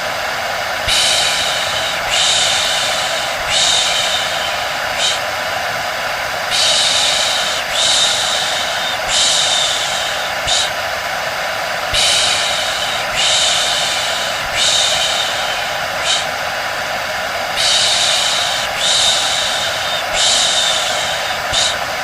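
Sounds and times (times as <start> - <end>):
hair dryer running: 0.0 - 22.0
person shushing: 0.9 - 5.3, 12.0 - 16.4, 17.6 - 21.9.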